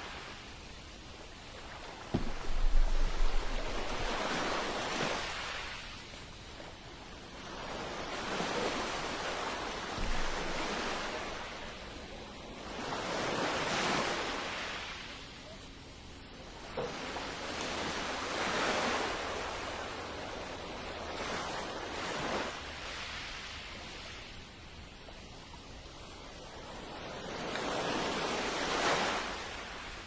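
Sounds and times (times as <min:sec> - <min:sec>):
ocean waves washing in: 0:00.0 - 0:15.2, 0:25.1 - 0:30.0
sharp thump: 0:02.1 - 0:04.7, 0:10.0 - 0:10.6.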